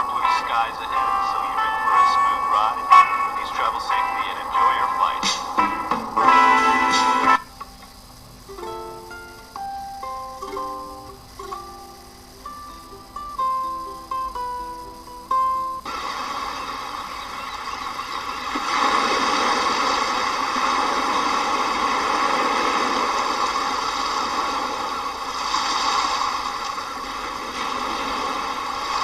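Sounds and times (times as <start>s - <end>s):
plucked string music: 0.0s - 15.9s
steady rushing noise: 0.0s - 29.0s.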